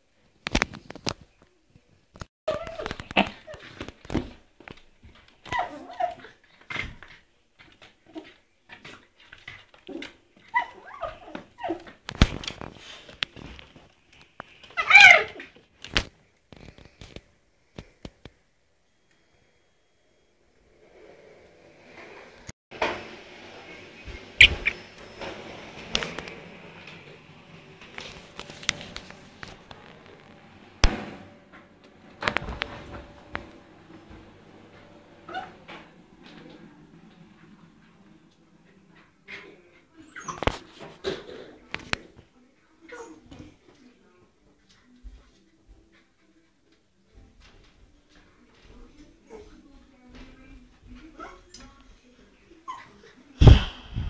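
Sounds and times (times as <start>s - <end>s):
puppy whimpering and whining: 2.5s - 3.6s, 10.5s - 11.9s, 40.0s - 40.5s
sharp knocks: 30.8s - 31.3s
sharp thump: 30.8s - 31.4s.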